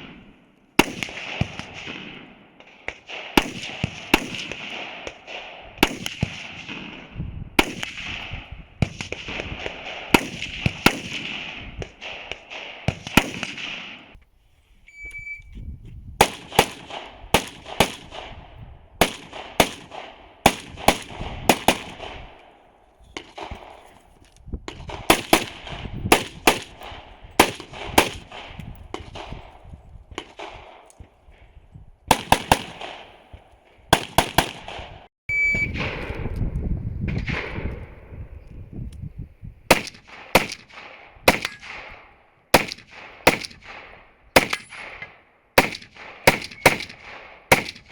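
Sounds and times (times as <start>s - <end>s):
rapid gunfire: 0.0s - 14.2s, 16.2s - 18.4s, 19.0s - 22.4s, 24.7s - 29.4s, 32.1s - 33.2s, 33.9s - 35.1s, 39.7s - 45.0s, 45.6s - 47.9s
shot timer beep: 14.9s - 15.6s, 35.3s - 35.8s.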